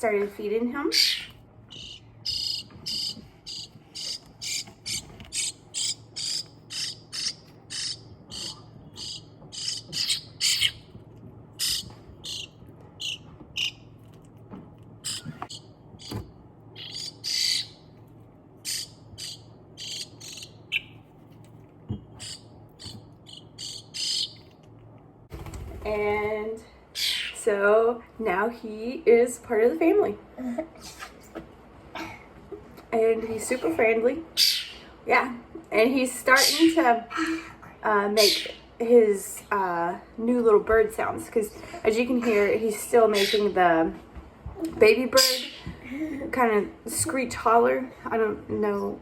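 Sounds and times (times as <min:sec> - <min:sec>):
baby starling begging calls: 0:00.9 - 0:10.8, 0:16.8 - 0:17.8, 0:18.7 - 0:20.9, 0:22.2 - 0:24.4, 0:27.0 - 0:27.4, 0:34.4 - 0:34.9, 0:36.3 - 0:36.8, 0:38.2 - 0:38.7, 0:43.1 - 0:43.6, 0:45.2 - 0:45.7.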